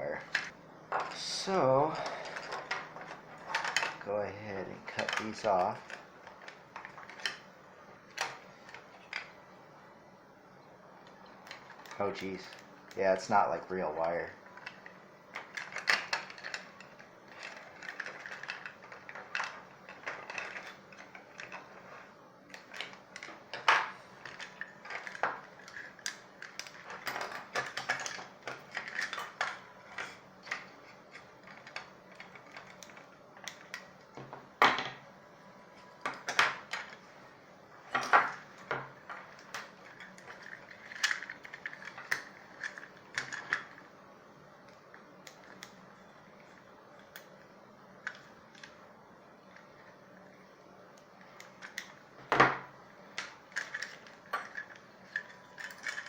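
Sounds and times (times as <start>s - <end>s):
plastic parts clicking: 4.9s - 7.4s, 14.6s - 21.8s, 22.5s - 34.3s, 38.0s - 43.8s, 53.1s - 56.0s.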